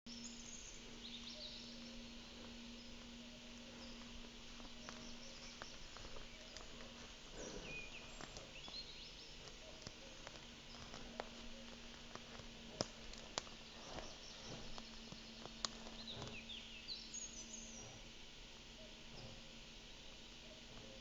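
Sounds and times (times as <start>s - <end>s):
small birds chirping: 0.1s - 21.0s
steady low hum: 0.1s - 21.0s
twig snaps and rustles: 1.8s - 16.5s
moose heavy breath: 3.4s - 15.0s, 15.7s - 16.6s, 18.8s - 21.0s.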